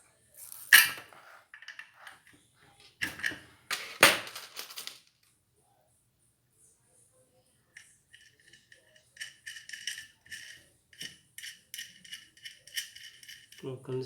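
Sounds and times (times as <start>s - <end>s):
small metal fittings clinking: 7.8s - 14.0s.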